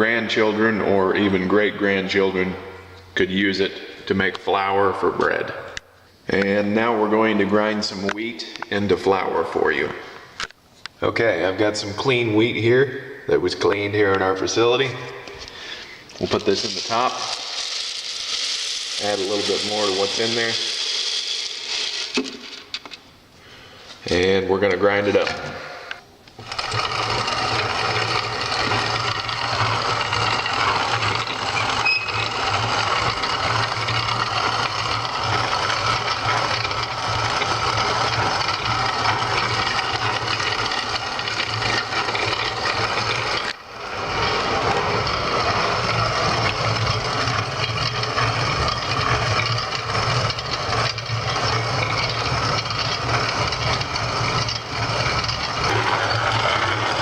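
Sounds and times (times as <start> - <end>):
hand-crank grain mill grinding: 13.6 - 57.0.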